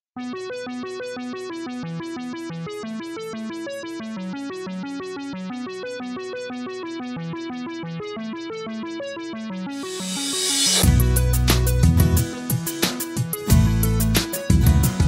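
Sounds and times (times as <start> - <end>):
synthesizer keyboard tune: 0.2 - 15.0
bouncing bass line: 10.8 - 12.4, 13.5 - 15.0.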